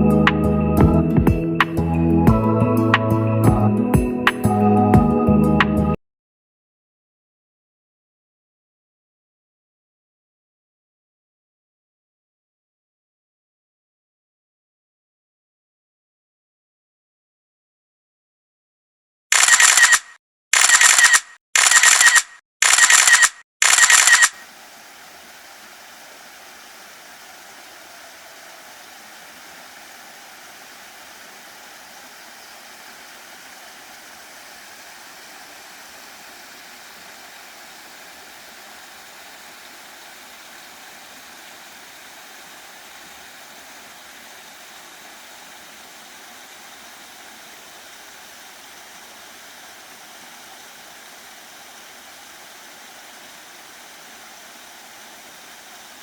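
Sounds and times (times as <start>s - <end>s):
short loud bursts: 19.3s - 24.4s
waterfall rushing: 24.3s - 56.0s.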